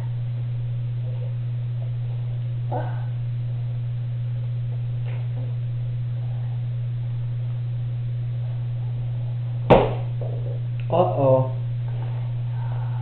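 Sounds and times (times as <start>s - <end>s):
steady low hum: 0.0s - 13.0s
sharp knock: 9.7s - 10.1s.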